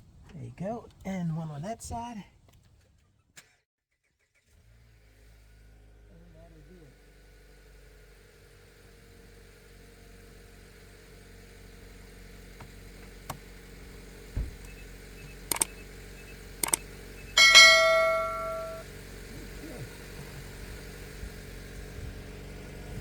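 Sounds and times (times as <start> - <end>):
ringing metallic clang: 17.4 - 18.8.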